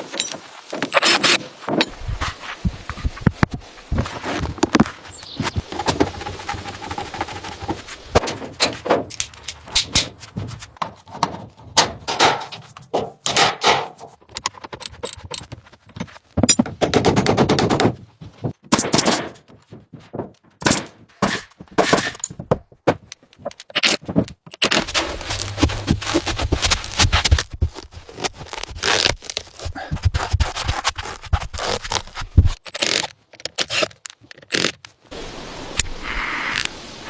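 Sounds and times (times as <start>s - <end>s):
scraping: 0.1s - 16.8s, 19.3s - 34.6s
sharp knocks and clicks: 6.8s - 27.6s.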